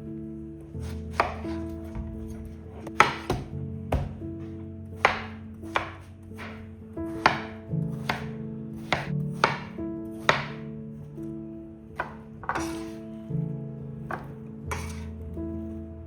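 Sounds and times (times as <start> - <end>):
soft background music: 0.0 - 16.0
knife chopping on cutting board: 0.8 - 1.6, 2.9 - 4.2, 5.0 - 6.6, 7.2 - 9.7, 10.3 - 10.6, 12.0 - 13.0, 14.1 - 15.0.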